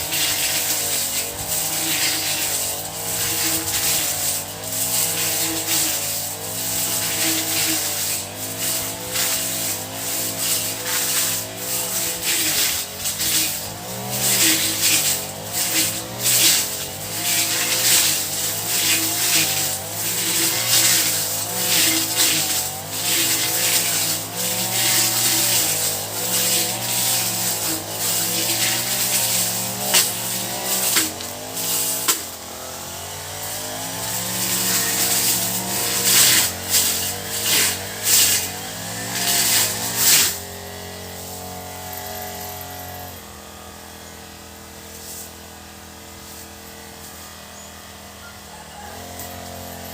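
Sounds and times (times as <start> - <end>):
rasping noise bursts: 0.0 - 32.4, 33.1 - 40.4
grass cutter engine running: 0.0 - 49.9.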